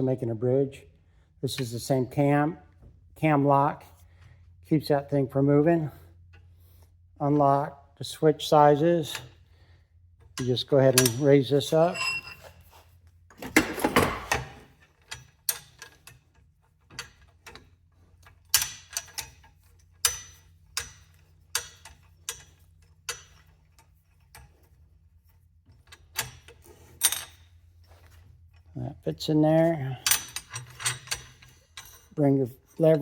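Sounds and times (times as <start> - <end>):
metal parts clicking and clinking: 10.2 - 28.8, 29.6 - 33.0.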